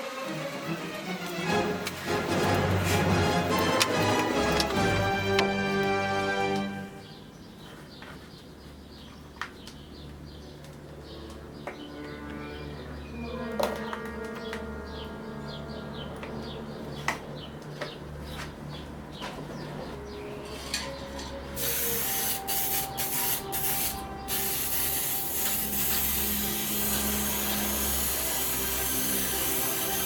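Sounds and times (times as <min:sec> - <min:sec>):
spray paint can hissing: 0:21.6 - 0:30.0.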